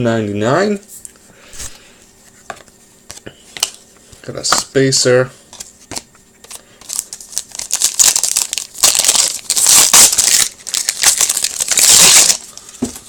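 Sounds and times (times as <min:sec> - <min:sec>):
wrapper crinkling and crumpling: 0:06.8 - 0:12.7.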